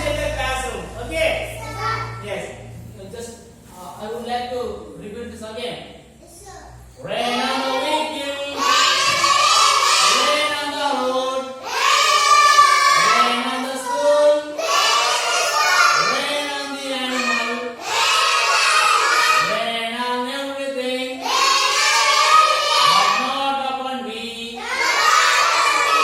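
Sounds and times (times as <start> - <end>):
children chanting a rhyme: 7.0 - 19.7, 21.1 - 23.7, 24.5 - 26.0.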